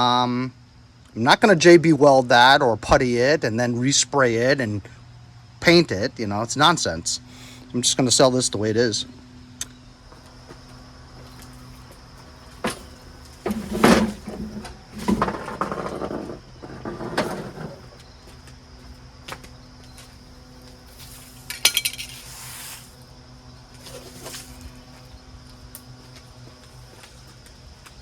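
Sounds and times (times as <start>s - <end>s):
small hard objects clinking: 21.1s - 22.3s.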